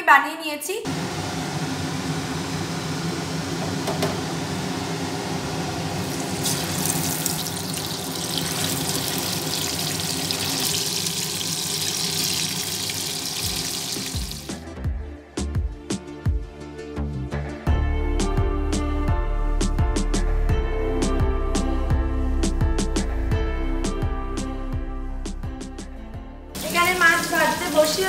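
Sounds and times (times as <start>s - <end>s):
water running from tap: 6.0s - 14.6s, 26.6s - 28.0s
music: 13.4s - 28.0s.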